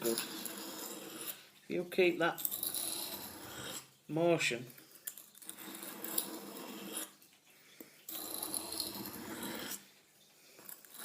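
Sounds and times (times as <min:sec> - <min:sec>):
knife scraping on sharpening stone: 0:00.0 - 0:01.5, 0:02.4 - 0:04.0, 0:05.0 - 0:07.2, 0:08.1 - 0:09.9, 0:10.7 - 0:11.0.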